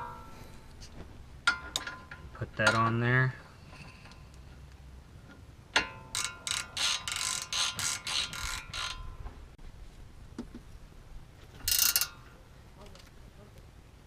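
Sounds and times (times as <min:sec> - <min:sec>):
ratcheting wrench clicking: 0:05.8 - 0:09.2, 0:11.6 - 0:12.3.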